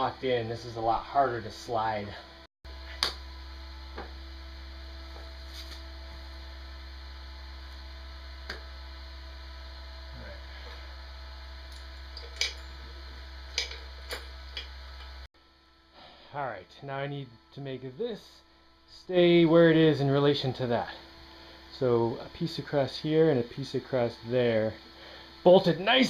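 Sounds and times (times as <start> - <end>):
low electrical hum: 0.0 - 26.0.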